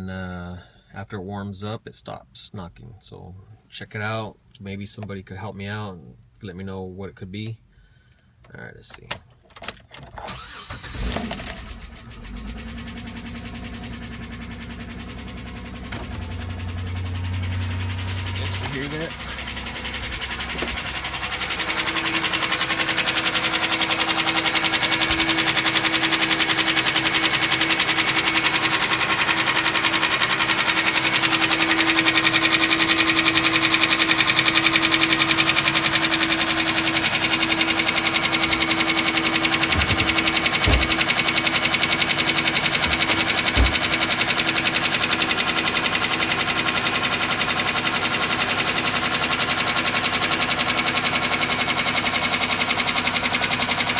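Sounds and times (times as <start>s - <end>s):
car engine knocking: 12.8s - 53.9s.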